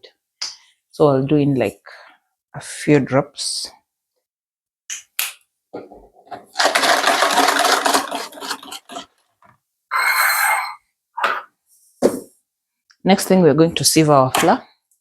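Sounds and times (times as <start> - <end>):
utensils rattling: 6.4 - 9.2
stirring in mixing bowl: 6.4 - 9.5.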